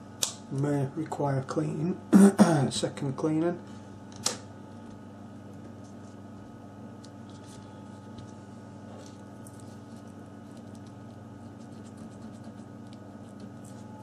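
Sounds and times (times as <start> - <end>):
low electrical hum: 0.0 - 14.0
sharp click: 0.2 - 0.4.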